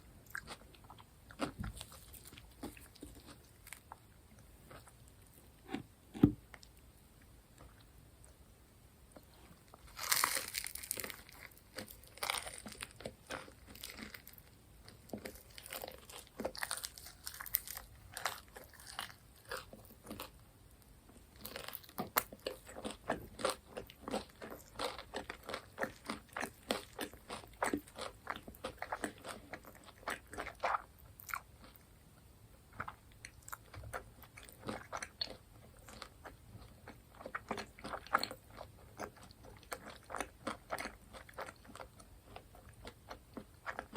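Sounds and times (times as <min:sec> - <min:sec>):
crisp crunching and chewing: 0:00.2 - 0:06.8, 0:09.6 - 0:20.4, 0:21.2 - 0:31.9, 0:32.7 - 0:43.9
crunchy bite: 0:09.8 - 0:14.4.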